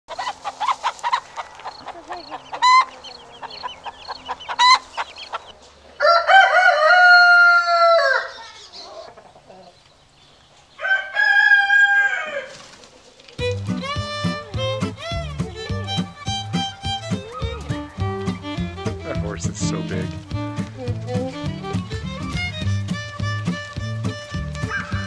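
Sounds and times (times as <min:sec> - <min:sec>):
chickens clucking: 0:00.1 - 0:25.0
rooster crowing: 0:06.0 - 0:09.1, 0:10.8 - 0:12.6, 0:24.3 - 0:25.0.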